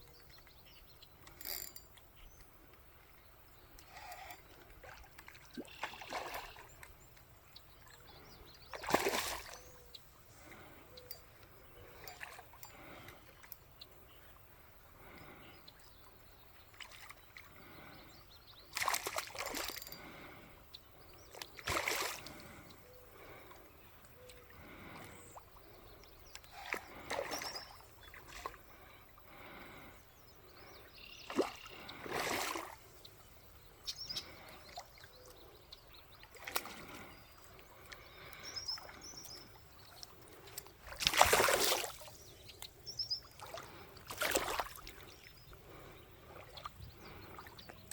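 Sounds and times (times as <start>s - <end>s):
water splashing and sloshing: 4.0s - 10.8s, 11.9s - 13.6s, 16.6s - 17.9s, 18.7s - 20.4s, 21.3s - 29.9s, 31.2s - 33.3s, 36.1s - 47.9s.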